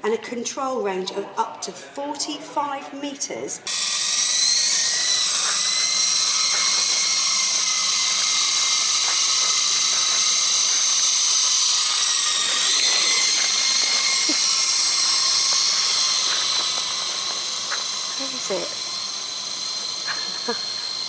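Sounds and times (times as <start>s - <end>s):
toy helicopter rotors whining: 3.7s - 21.0s.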